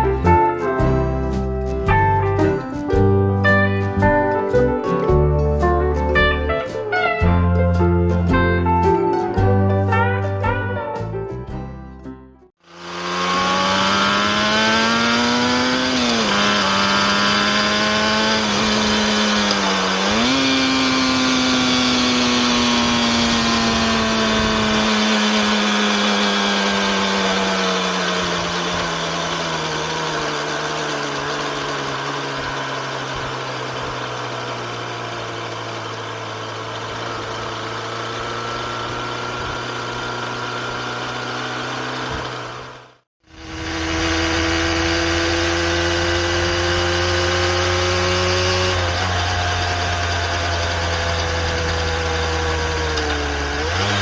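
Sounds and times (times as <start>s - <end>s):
two-stroke motorcycle engine idling: 18.4s - 54.0s.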